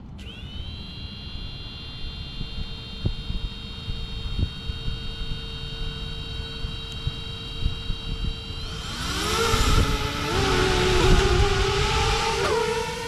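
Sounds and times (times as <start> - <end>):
quadcopter motors whining: 0.0 - 13.0
wind buffeting microphone: 7.6 - 13.0.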